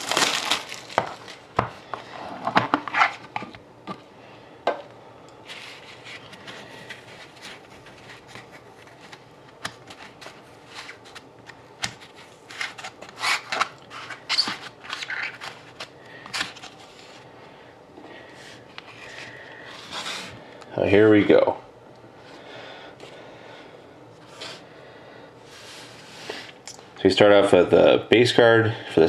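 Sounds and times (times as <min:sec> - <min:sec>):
cards and packaging rustling: 0:00.0 - 0:01.7, 0:05.4 - 0:17.3.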